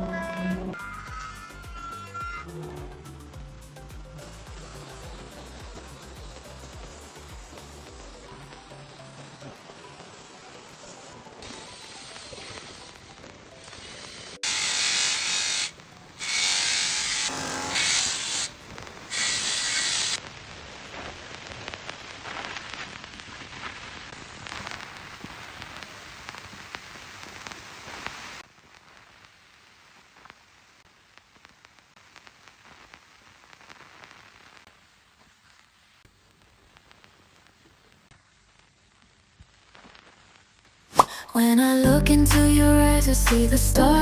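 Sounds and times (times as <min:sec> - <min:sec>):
woodworking power tool on wood: 0:14.4 - 0:20.2.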